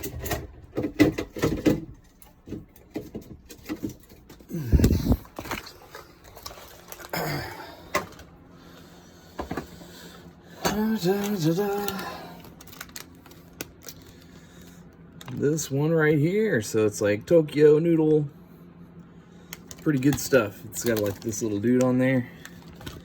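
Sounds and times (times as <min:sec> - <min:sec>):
package rustling: 0:04.8 - 0:07.2, 0:10.8 - 0:15.4, 0:19.5 - 0:23.0.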